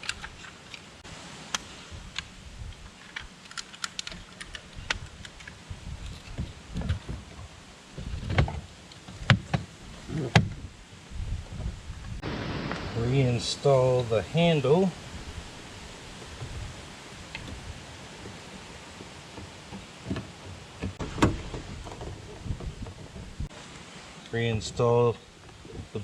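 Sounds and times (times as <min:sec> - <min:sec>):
wind rumble on microphone: 0:01.7 - 0:03.4, 0:04.0 - 0:14.1, 0:14.7 - 0:23.5, 0:24.5 - 0:26.0
plastic connectors clicking: 0:03.0 - 0:05.6
sharp plastic snaps: 0:03.1 - 0:05.6.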